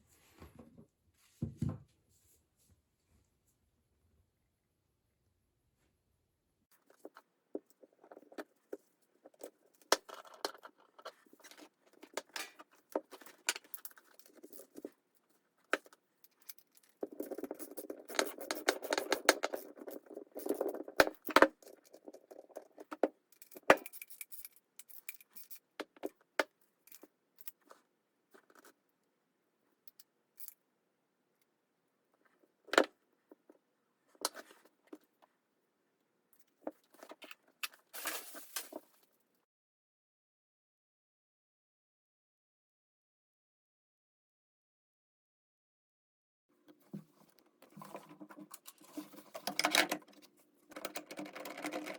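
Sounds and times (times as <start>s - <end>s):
small metal parts clicking: 15.8s - 25.7s.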